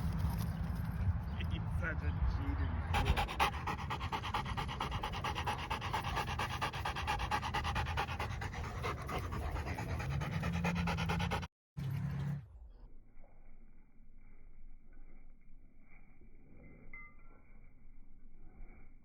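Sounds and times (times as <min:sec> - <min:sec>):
dog panting: 0:02.9 - 0:11.5.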